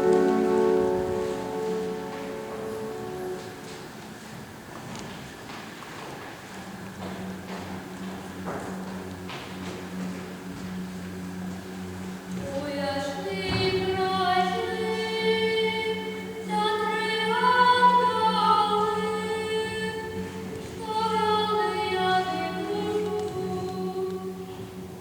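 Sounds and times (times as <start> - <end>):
choir singing: 0.0 - 4.0, 12.4 - 24.8
steady low hum: 0.0 - 25.0.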